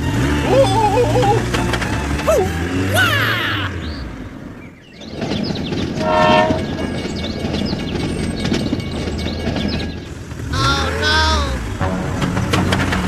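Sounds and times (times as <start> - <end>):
steady rumbling noise: 5.1 - 13.0
short horn blast: 6.0 - 7.0, 11.8 - 13.0.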